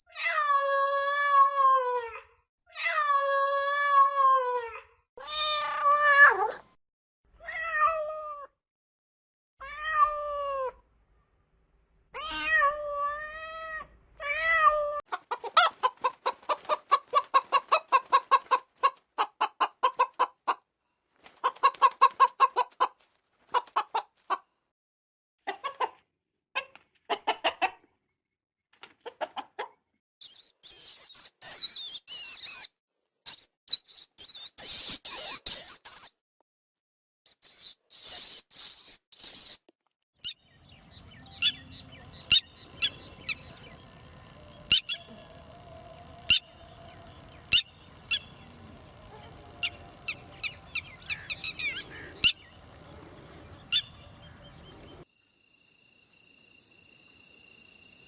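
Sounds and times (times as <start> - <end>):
high bird chirps with pitch glides: 30.2 - 32.7, 33.3 - 36.2, 37.3 - 39.6, 40.2 - 43.8, 44.7 - 45.3, 46.2 - 48.5
bird calls: 40.2 - 55.1.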